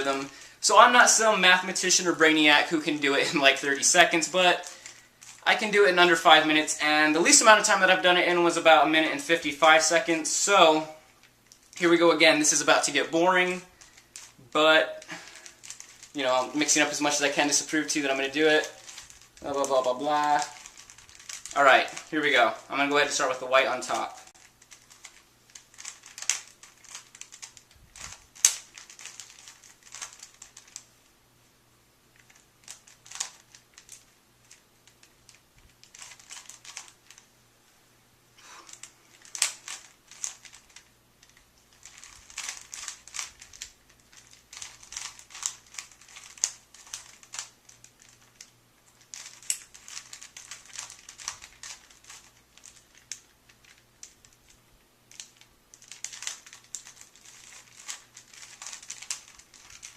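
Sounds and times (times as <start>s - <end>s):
puzzle cube plastic clicks: 13.7s - 14.4s, 15.0s - 18.0s, 18.6s - 22.1s, 23.9s - 30.9s, 32.1s - 37.2s, 38.7s - 59.9s.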